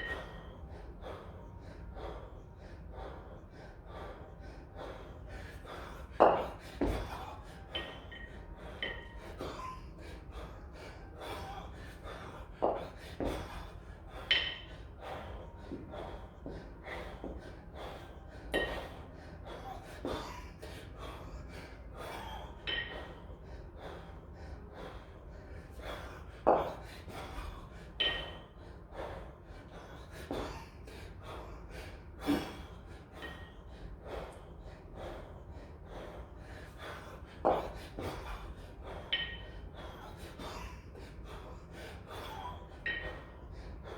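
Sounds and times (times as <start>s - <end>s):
man breathing hard and gasping: 0.0s - 43.9s
metallic clinks of kettlebells: 22.6s - 23.2s, 28.0s - 28.4s, 39.0s - 39.6s, 42.8s - 43.4s.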